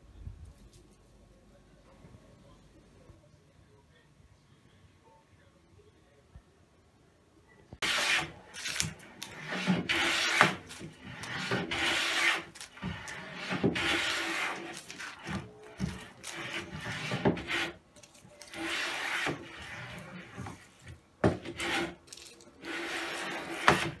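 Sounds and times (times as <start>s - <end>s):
wood rubbing on wood: 7.8s - 17.8s, 18.4s - 24.0s.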